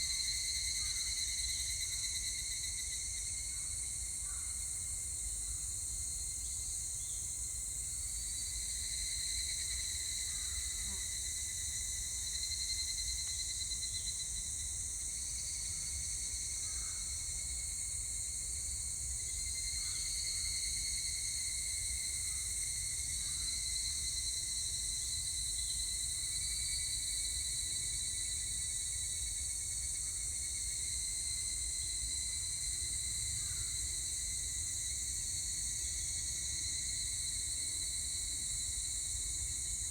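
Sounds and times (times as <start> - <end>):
evening cicadas calling: 29.9 - 37.1.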